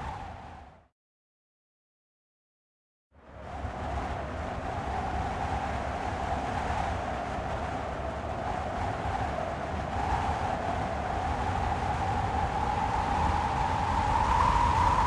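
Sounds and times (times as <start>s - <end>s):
wind whistling: 3.4s - 15.0s.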